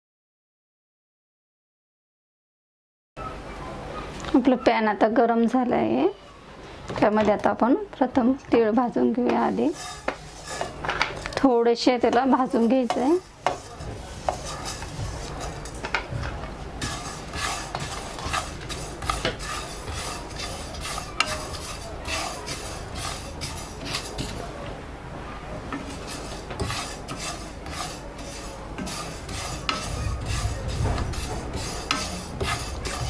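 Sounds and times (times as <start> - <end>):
spatula scraping a pan: 8.9 - 24.8, 25.5 - 33.0.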